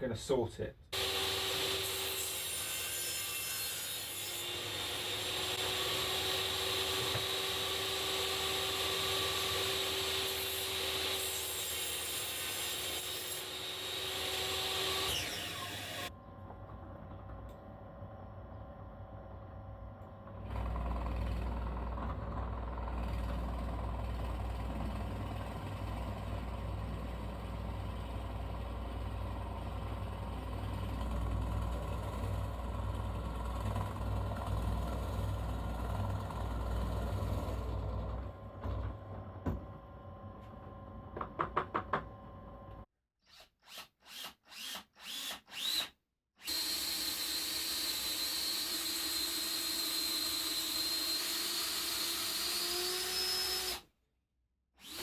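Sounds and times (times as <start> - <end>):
whining power tool: 1.0 - 16.1, 43.7 - 53.8, 54.8 - 55.0.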